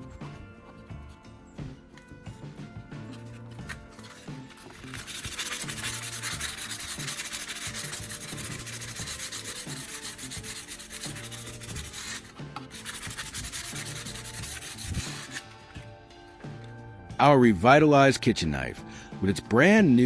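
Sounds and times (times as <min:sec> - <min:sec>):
sandpaper scratching on plastic: 0:03.0 - 0:15.8.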